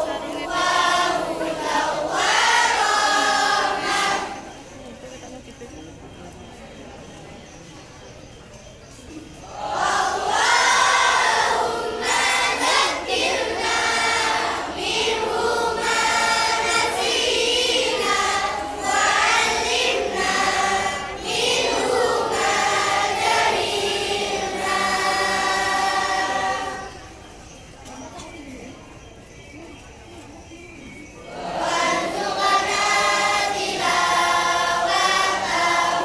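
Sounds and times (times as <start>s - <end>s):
children singing together: 0.0s - 4.6s, 9.4s - 27.2s, 31.3s - 36.0s.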